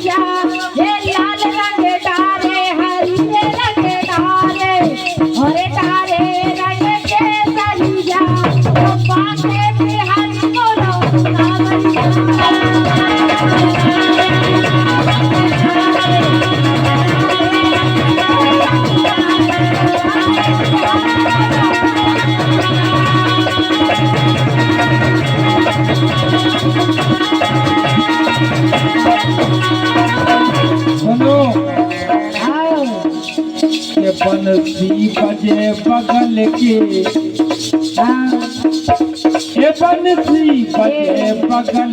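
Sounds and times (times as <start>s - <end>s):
rattling percussion: 0.0s - 41.9s
steady drum beat: 3.2s - 41.9s
held sustained tone: 8.5s - 34.0s.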